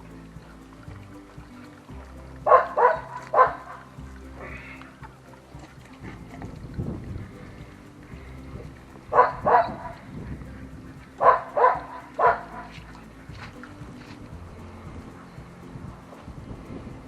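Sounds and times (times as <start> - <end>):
dog barking: 2.5 - 3.8, 9.1 - 9.9, 11.2 - 12.7.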